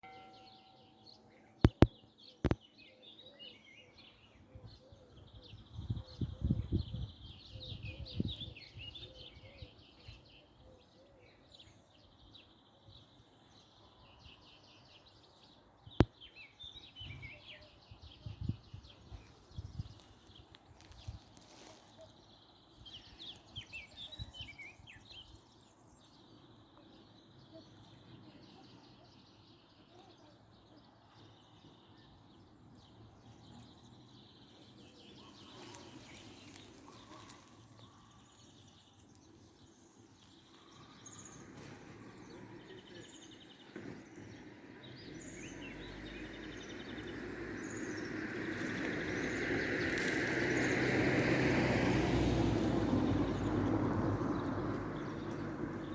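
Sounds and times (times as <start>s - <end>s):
birds chirping: 0.0s - 55.9s
vehicle approaching: 45.1s - 55.9s.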